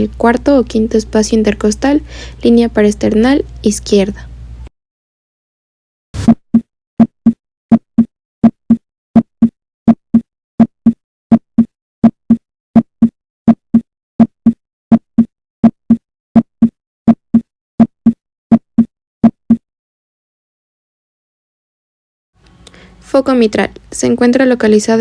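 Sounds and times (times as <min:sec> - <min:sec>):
heartbeat: 0:06.2 - 0:19.6.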